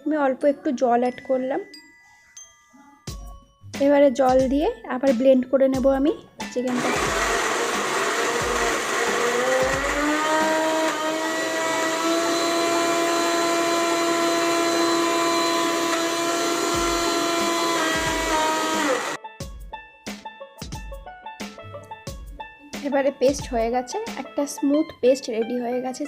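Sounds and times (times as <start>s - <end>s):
electric mixer grinder whining: 6.7s - 19.2s.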